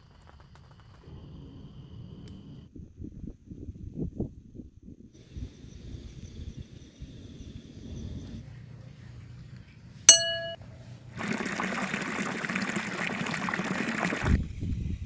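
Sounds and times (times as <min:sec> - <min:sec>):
ringing clink: 0:10.1 - 0:10.6
liquid pouring into container: 0:11.2 - 0:14.4.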